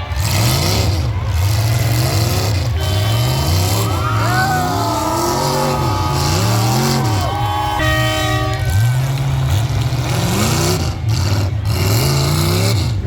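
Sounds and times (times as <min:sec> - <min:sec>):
truck engines revving: 0:00.0 - 0:13.0
horn blast: 0:02.6 - 0:09.2.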